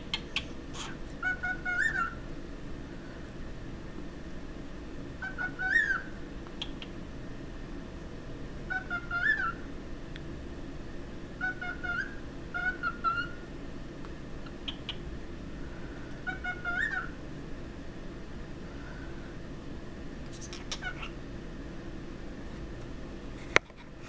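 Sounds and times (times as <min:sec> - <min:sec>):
cockatiel whistling: 0:00.0 - 0:02.2, 0:05.2 - 0:06.7, 0:08.7 - 0:09.6, 0:11.4 - 0:13.4, 0:16.2 - 0:17.2.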